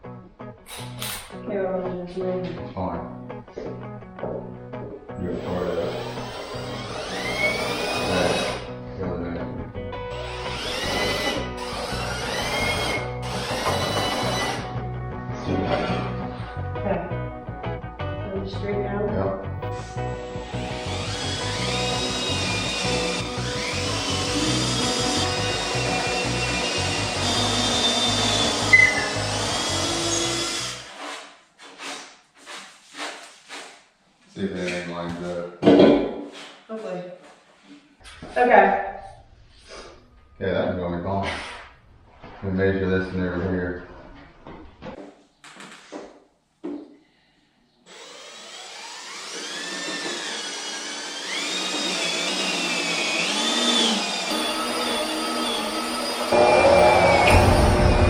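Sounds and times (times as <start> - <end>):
power drill running: 5.3 - 8.7, 10.1 - 14.7, 19.8 - 31.1, 47.9 - 58.0.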